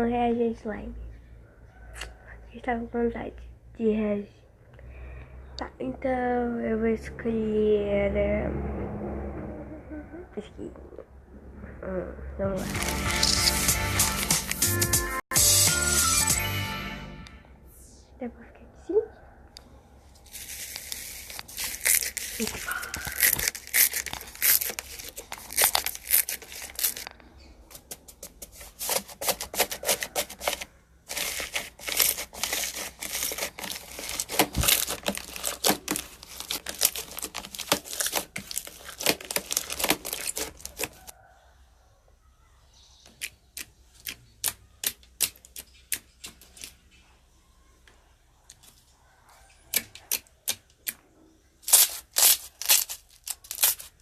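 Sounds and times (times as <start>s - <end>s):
slime squishing and crackling: 20.2s - 41.0s, 51.6s - 54.0s.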